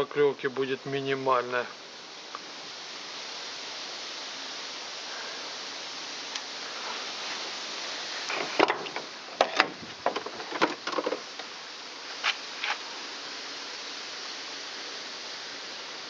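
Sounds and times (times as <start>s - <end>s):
steady hiss: 0.0s - 16.0s
irregular clicks and knocks: 8.3s - 11.5s.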